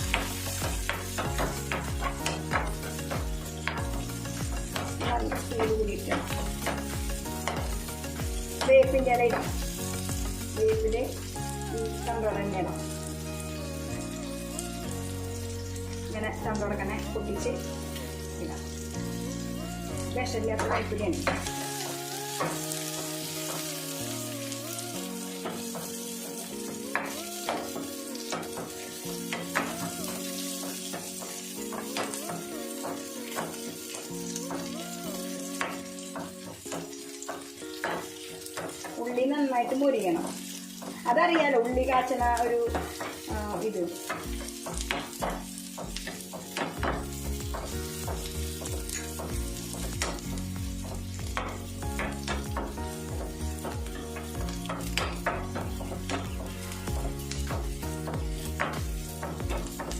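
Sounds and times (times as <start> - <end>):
spoon stirring and clinking on pan: 0.0 - 7.8, 26.6 - 34.7, 35.6 - 59.9
onion sizzling in oil: 0.0 - 59.9
soft background music: 0.0 - 59.9.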